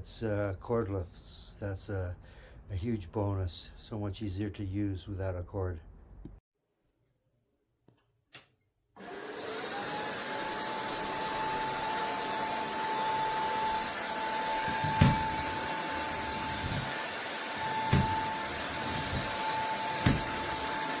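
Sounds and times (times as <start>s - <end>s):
stick vacuum motor whine: 9.0s - 21.0s
dull knocks: 14.7s - 15.5s, 17.9s - 18.3s, 20.0s - 20.4s.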